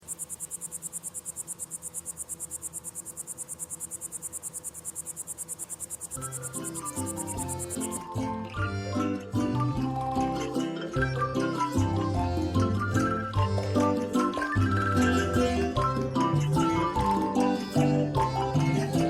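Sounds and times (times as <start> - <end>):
insects chirping: 0.0 - 8.3
plucked string music: 6.2 - 19.0.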